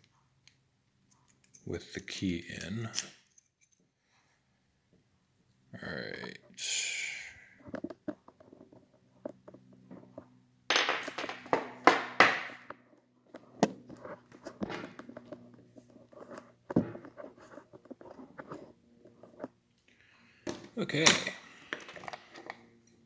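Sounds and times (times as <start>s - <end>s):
metallic clinks and rattling: 1.1s - 1.7s, 2.6s - 3.9s, 10.7s - 12.4s
padlock parts clicking and tapping: 20.5s - 23.0s.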